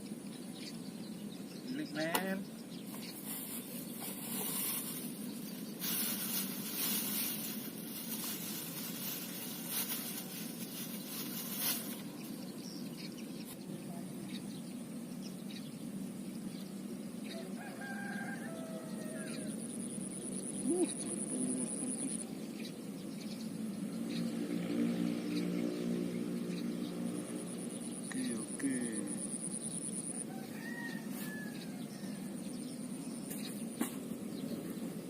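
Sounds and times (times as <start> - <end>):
low outdoor background: 0.0 - 35.0
faint rooster crowing: 17.2 - 19.8, 30.0 - 32.6.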